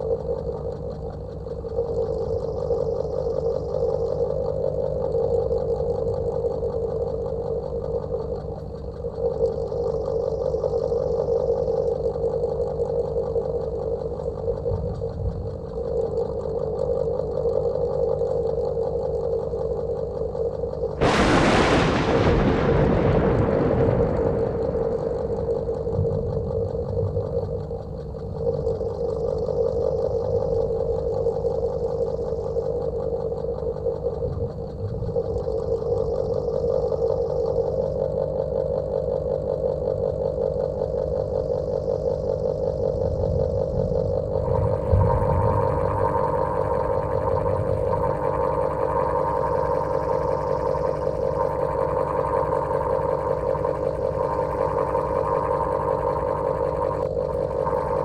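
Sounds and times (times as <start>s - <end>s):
electric fan running with buzzing hum: 13.2s - 37.1s
loud rushing noise: 21.0s - 26.2s.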